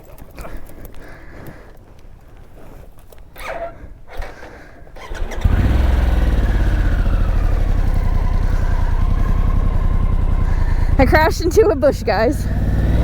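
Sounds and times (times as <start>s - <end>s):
faint scuffing and handling noises: 0.0s - 4.0s
motorcycle engine starting and idling: 2.6s - 13.0s.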